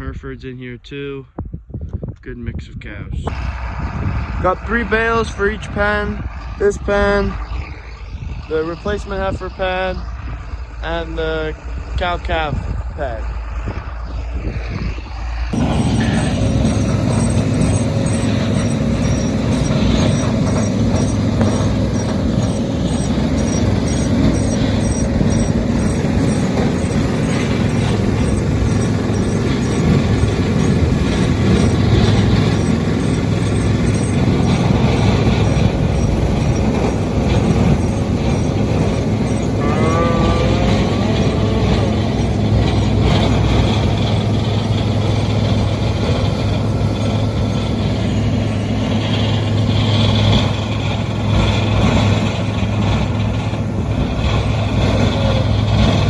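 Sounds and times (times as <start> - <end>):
tractor engine running: 3.3 - 56.0
cow mooing: 15.9 - 43.7.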